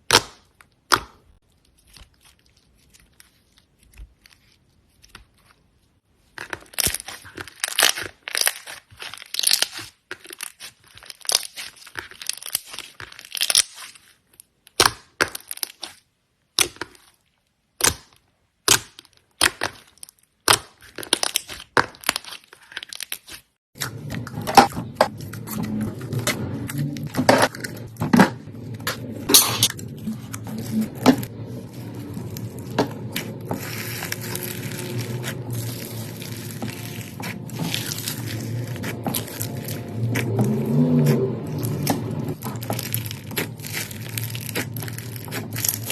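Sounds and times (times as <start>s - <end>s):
slime crackling and popping: 6.4s - 17.1s, 29.6s - 45.9s.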